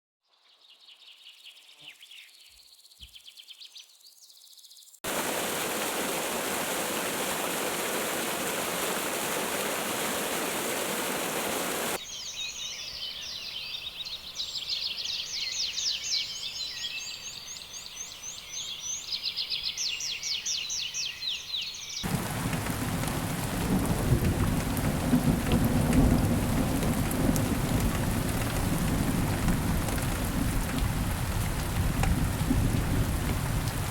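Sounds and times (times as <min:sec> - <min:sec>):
rapid high birdsong: 0:00.3 - 0:22.5
rain hiss: 0:05.0 - 0:12.0, 0:22.0 - 0:33.9
heavy rain: 0:05.1 - 0:12.0, 0:22.0 - 0:33.9
low thunder rumble: 0:22.1 - 0:33.9.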